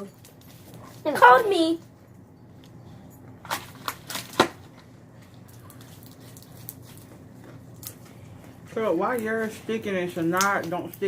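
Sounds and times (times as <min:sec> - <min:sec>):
faint slime crackles: 0:05.2 - 0:08.4.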